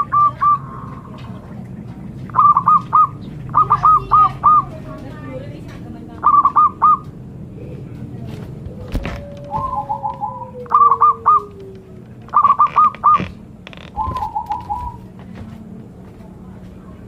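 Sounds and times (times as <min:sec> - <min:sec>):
dove cooing: 0:00.0 - 0:05.4, 0:06.1 - 0:15.2.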